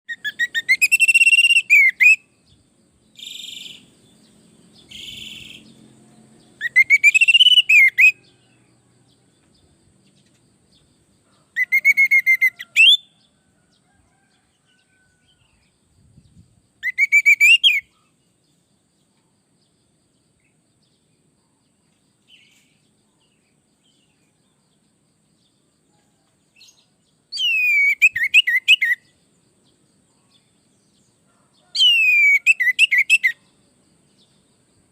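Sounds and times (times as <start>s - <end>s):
raspy bird calls: 0.1s - 2.3s, 3.2s - 4.0s, 4.8s - 5.8s, 6.6s - 8.3s, 11.4s - 13.2s, 31.6s - 33.4s
thrush singing whistled phrases: 0.1s - 2.4s, 6.6s - 8.2s, 11.6s - 13.1s, 16.8s - 17.9s, 27.4s - 29.0s, 31.8s - 33.4s.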